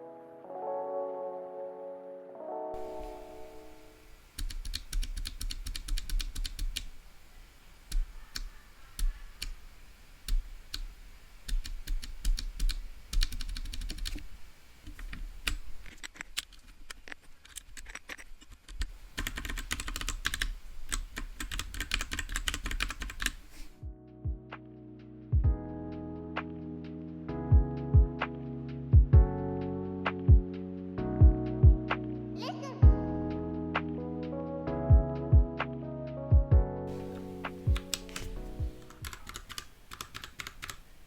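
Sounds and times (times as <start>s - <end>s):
mechanical keyboard typing: 4.4s - 7.0s, 10.3s - 14.2s, 17.5s - 23.4s, 36.9s - 40.9s.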